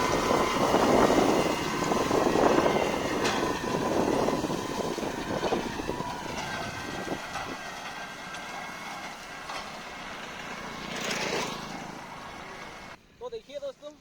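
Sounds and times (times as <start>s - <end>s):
tractor hay rake rumble and clatter: 0.0s - 13.7s.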